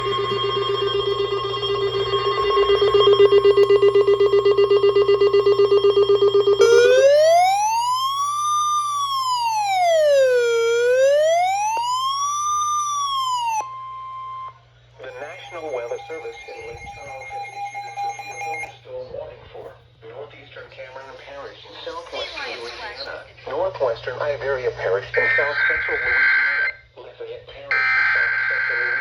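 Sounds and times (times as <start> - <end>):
rapidly pulsing buzzy tone: 0.0 - 13.5
siren wail rising and falling: 0.0 - 14.5, 15.1 - 18.7
steady high warning tone: 0.0 - 18.9, 27.7 - 29.0.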